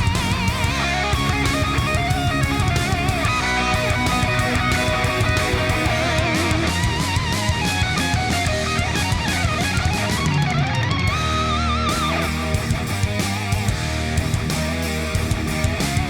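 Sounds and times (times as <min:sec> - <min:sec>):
electric guitar bending notes: 0:00.0 - 0:16.0
rock music: 0:00.0 - 0:16.0.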